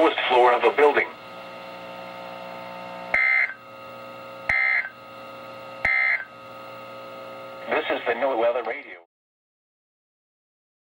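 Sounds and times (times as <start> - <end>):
steady hum: 0.0 - 9.1
digital data tone bursts: 3.1 - 3.6, 4.5 - 5.0, 5.8 - 6.3.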